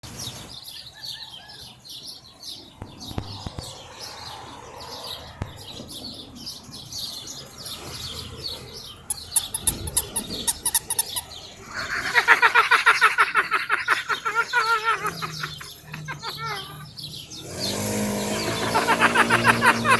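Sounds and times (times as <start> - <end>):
birds chirping: 0.2 - 19.9
loud fast bird trill: 9.1 - 19.9.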